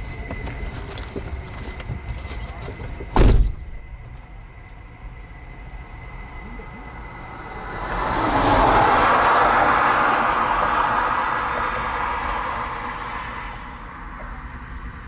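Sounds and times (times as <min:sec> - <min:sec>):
vehicle road rumble: 0:00.0 - 0:15.0
rushing noise: 0:06.0 - 0:14.0.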